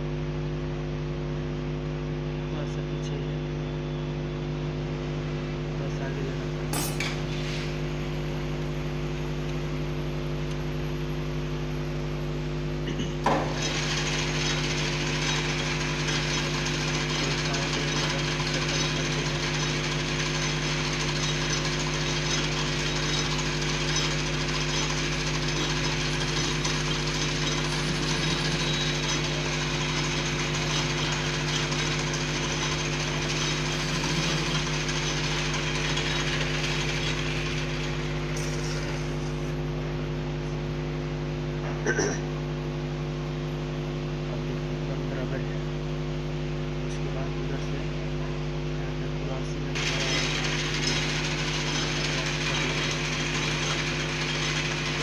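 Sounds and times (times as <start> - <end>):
cutting tool knocking metal: 6.8 - 7.2, 13.2 - 14.0
lathe motor hum: 13.2 - 39.8, 49.7 - 55.0
metal turning scraping hiss: 13.5 - 39.6, 49.8 - 55.0.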